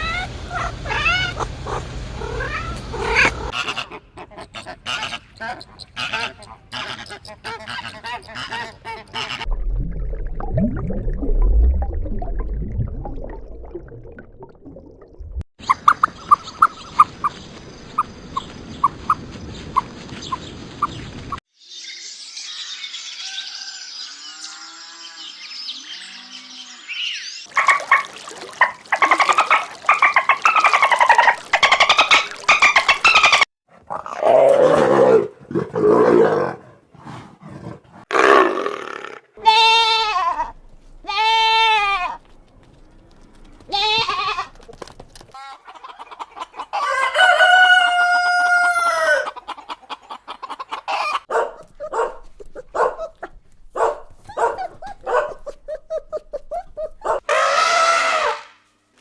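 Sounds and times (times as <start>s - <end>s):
hens clucking and squawking: 15.6s - 17.4s, 45.3s - 58.3s
roosters crowing: 46.7s - 49.4s, 57.1s - 58.5s.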